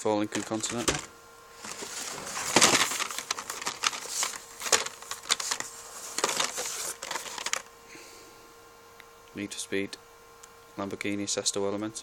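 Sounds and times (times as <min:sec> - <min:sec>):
plastic blister packs crinkling: 0:00.3 - 0:07.7.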